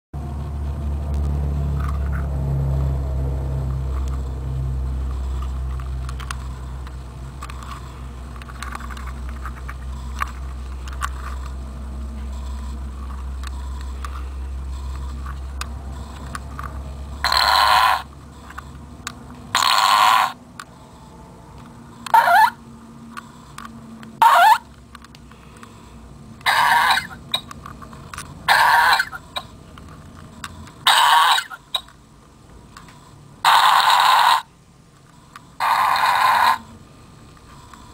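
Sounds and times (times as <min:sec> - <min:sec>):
steady low hum: 0:00.2 - 0:37.9
recorded fart noises: 0:17.2 - 0:18.1, 0:19.5 - 0:20.4, 0:33.4 - 0:34.5.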